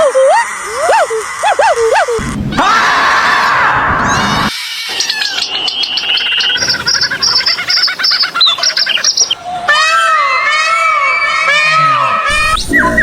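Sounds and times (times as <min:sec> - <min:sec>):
harsh noisy animal call: 0:00.0 - 0:13.0
rapid high chirping calls: 0:04.5 - 0:13.0.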